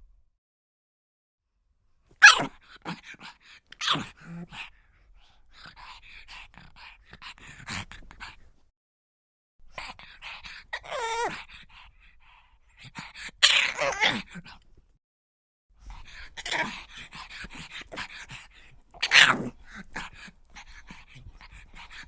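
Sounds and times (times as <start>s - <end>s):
dog making sharp sounds: 2.2s - 4.6s, 13.0s - 14.3s, 15.9s - 22.0s
dog whimpering: 10.8s - 11.4s, 13.4s - 14.3s, 19.0s - 20.2s.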